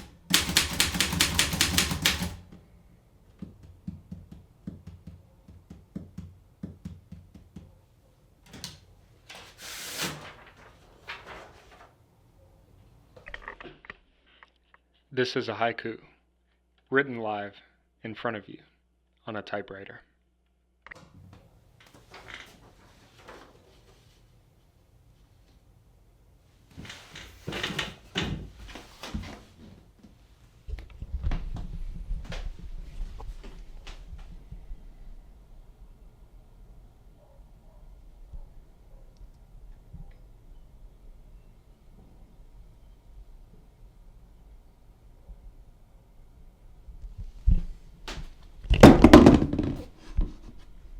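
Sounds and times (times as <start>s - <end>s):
typewriter keys striking: 0.0s - 2.5s.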